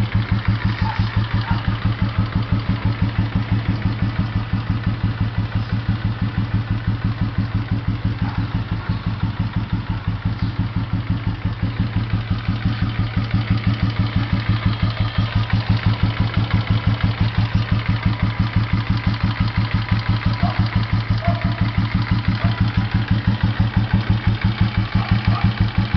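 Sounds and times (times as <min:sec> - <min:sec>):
motorcycle engine idling: 0:00.0 - 0:25.9.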